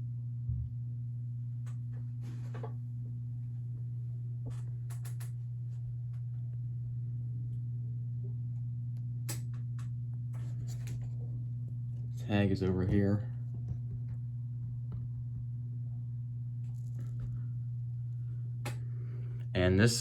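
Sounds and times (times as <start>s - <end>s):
ceiling fan motor humming: 0.0s - 20.0s.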